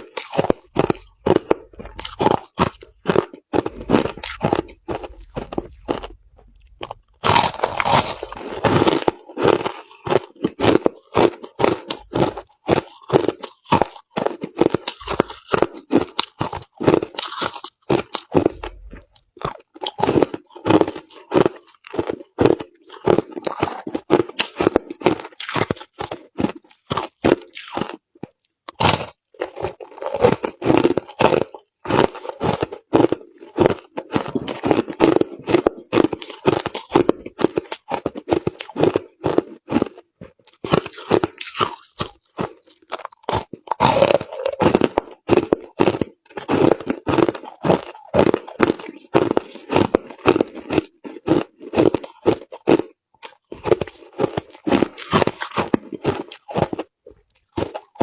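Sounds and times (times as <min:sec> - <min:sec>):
person chewing crushed ice: 0:00.0 - 0:58.0.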